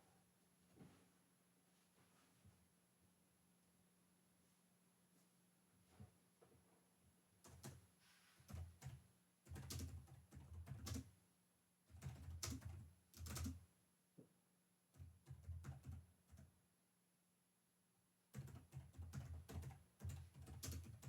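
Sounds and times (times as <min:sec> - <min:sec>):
keyboard typing: 0:07.4 - 0:07.8, 0:08.5 - 0:11.1, 0:11.9 - 0:13.6, 0:15.0 - 0:16.5, 0:18.3 - 0:21.0.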